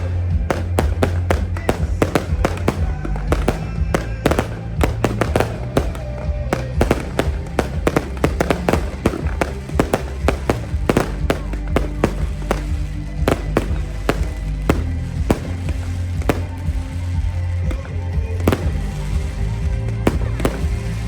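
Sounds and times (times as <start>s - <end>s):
firework bangs and crackles: 0.0s - 21.0s
loud music with heavy bass: 0.0s - 21.0s.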